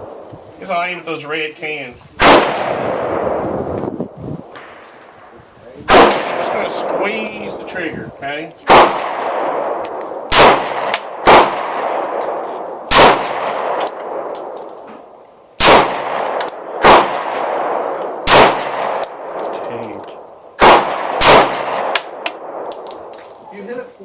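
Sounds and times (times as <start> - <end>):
pistol shots with echo: 2.2 - 3.5, 5.9 - 7.9, 8.6 - 14.7, 15.6 - 23.2.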